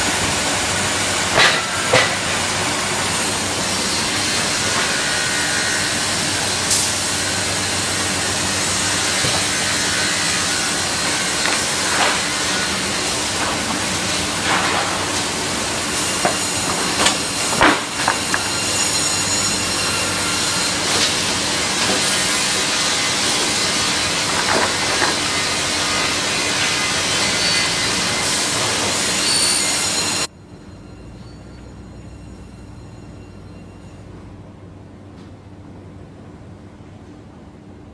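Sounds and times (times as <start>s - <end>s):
machinery hissing: 0.0s - 30.3s
wood and metal knocks: 9.1s - 19.0s.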